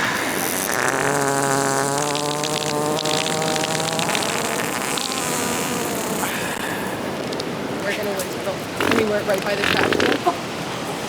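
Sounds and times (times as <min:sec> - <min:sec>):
buzzing fart sound: 0:00.0 - 0:06.7, 0:08.8 - 0:10.4.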